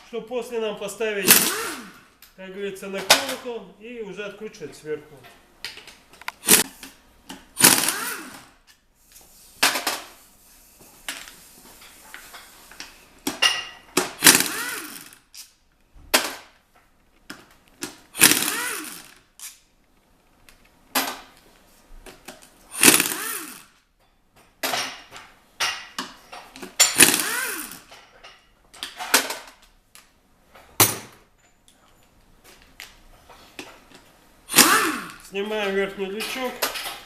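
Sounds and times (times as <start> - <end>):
impact wrench bursts: 1.1 - 2.2, 6.2 - 8.7, 13.9 - 15.6, 17.9 - 19.6, 22.7 - 23.8, 26.7 - 28.0, 34.5 - 35.4.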